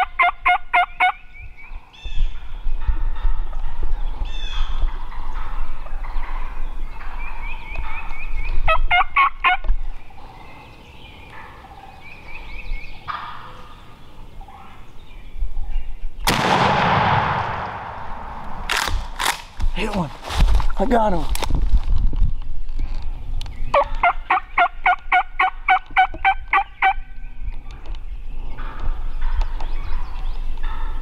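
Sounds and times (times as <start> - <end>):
turkeys gobbling: 0.0 - 1.2, 8.7 - 9.7, 13.0 - 13.8, 23.7 - 27.0
shotgun shot echoing: 16.3 - 19.5.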